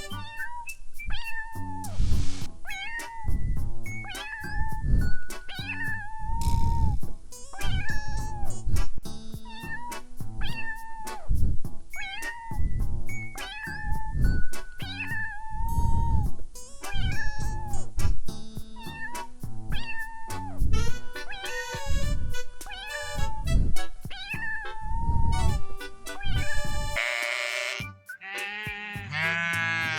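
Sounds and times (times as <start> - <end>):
background music with beat: 2.1 - 15.2, 16.2 - 29.9
cat meowing: 19.8 - 20.3, 24.1 - 25.5.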